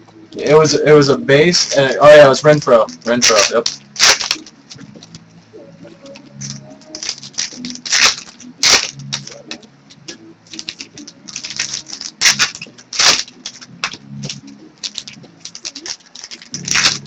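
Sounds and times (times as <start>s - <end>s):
cards and wrappers crinkling: 1.5s - 5.2s, 6.0s - 17.0s.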